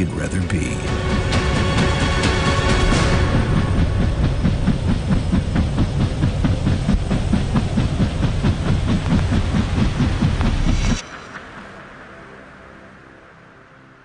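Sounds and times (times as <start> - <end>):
rhythmic mechanical chugging: 0.0 - 11.0.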